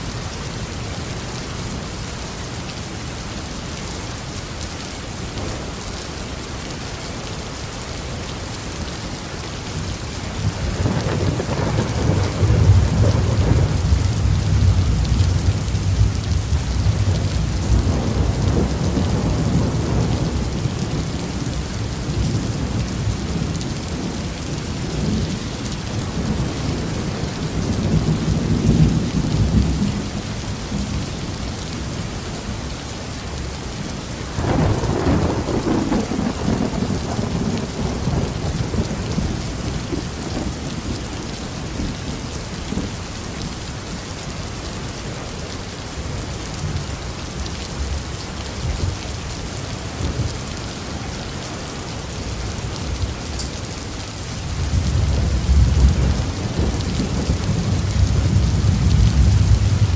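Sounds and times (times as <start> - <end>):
heavy rain falling: 0.0 - 59.9
deep thunder rumbling: 10.4 - 30.0, 34.3 - 41.1, 54.5 - 59.9.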